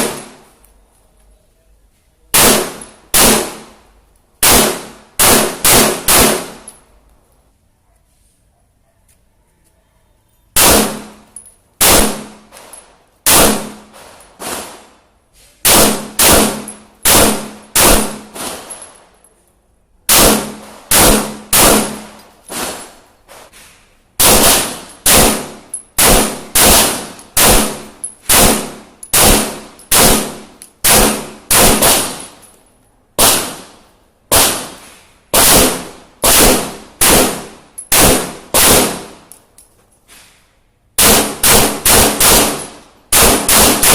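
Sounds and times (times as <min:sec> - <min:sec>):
pistol shots: 0:00.0 - 0:00.4, 0:02.3 - 0:03.8, 0:04.4 - 0:06.7, 0:10.6 - 0:12.6, 0:13.2 - 0:14.9, 0:15.6 - 0:18.7, 0:20.1 - 0:22.9, 0:24.2 - 0:32.3, 0:33.2 - 0:39.3, 0:41.0 - 0:43.9.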